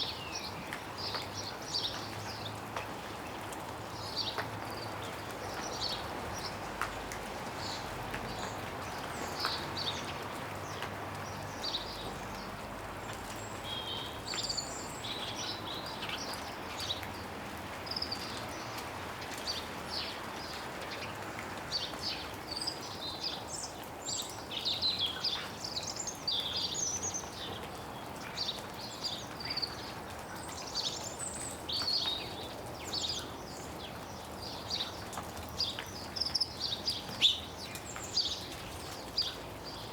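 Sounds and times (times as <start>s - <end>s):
water dripping from branches: 0.0s - 39.9s
small birds chirping: 17.9s - 39.9s.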